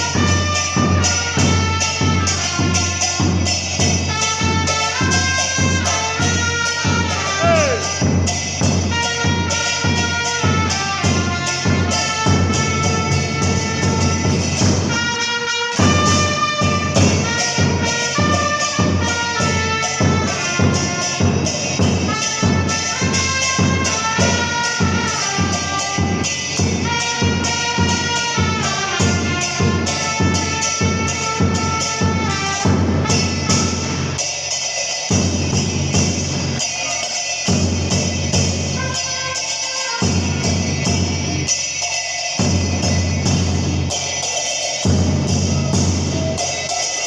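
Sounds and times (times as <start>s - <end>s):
trumpets playing a melody: 0.0s - 34.3s, 38.6s - 41.3s.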